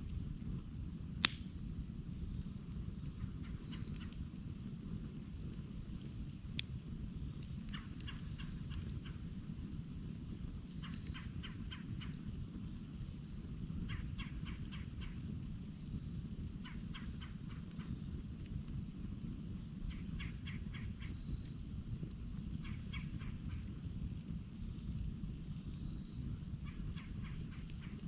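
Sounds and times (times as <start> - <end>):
campfire burning: 0.0 - 28.0
fire popping: 0.0 - 28.0
rapid ticks: 7.4 - 9.2, 16.6 - 25.1, 26.6 - 28.0.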